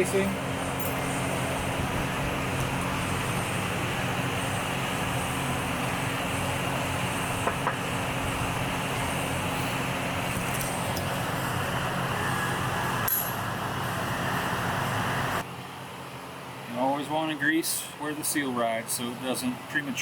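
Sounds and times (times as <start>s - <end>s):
machine hum: 0.0s - 15.6s.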